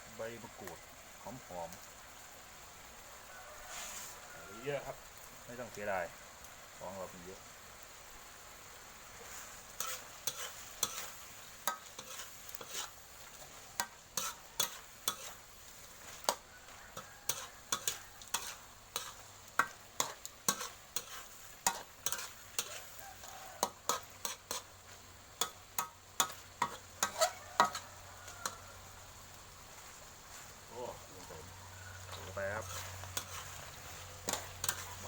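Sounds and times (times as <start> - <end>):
food sizzling: 0.0 - 35.0
spatula scraping a pan: 3.7 - 4.2, 9.1 - 28.7, 32.0 - 35.0.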